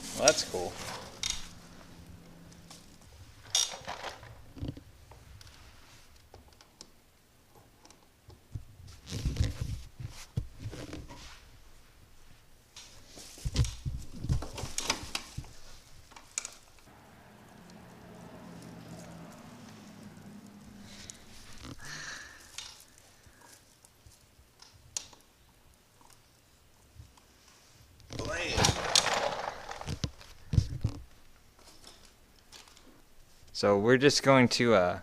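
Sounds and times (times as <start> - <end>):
parts clicking and clattering: 0.2 - 1.6, 2.5 - 5.5, 28.2 - 33.0.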